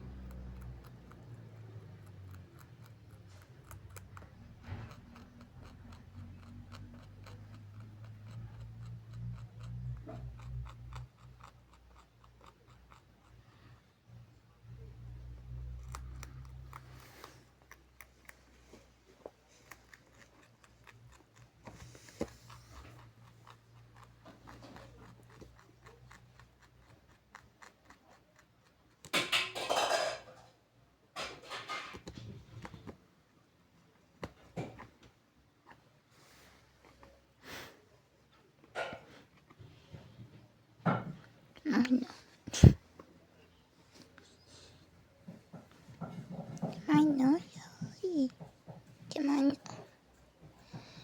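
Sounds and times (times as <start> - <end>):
pet chewing crunchy rinds: 0.0 - 29.5.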